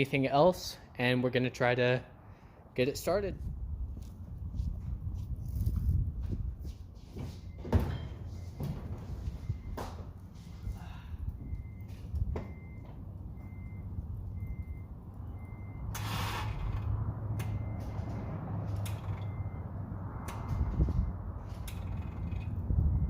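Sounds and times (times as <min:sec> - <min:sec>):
dashboard warning chime beeping: 0:07.3 - 0:15.9, 0:17.4 - 0:19.8.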